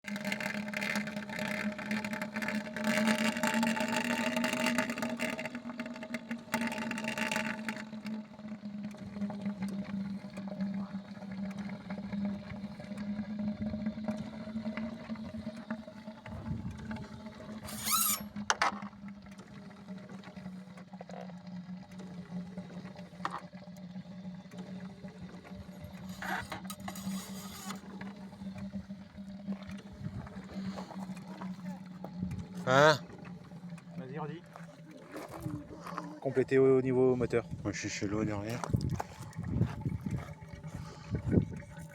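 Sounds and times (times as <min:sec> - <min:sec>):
short high squeal: 0:17.6 - 0:18.3.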